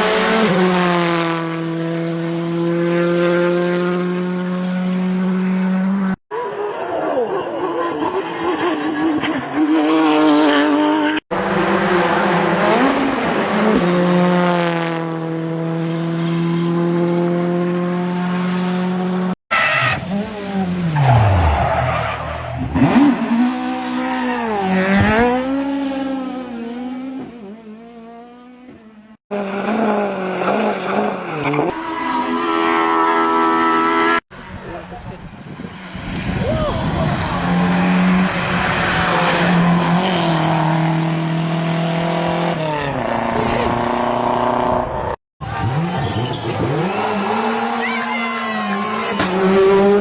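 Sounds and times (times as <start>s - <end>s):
rally car engines revving: 0.0s - 50.0s.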